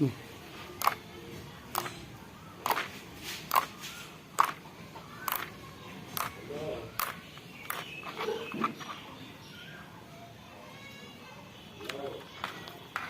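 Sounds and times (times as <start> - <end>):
sticky slime clicks: 0.8 - 1.0, 7.0 - 7.9.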